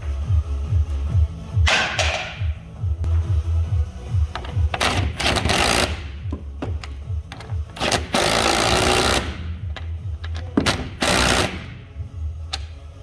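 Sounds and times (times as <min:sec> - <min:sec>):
background music with low beat: 0:00.0 - 0:13.0
power driver running: 0:04.3 - 0:11.9.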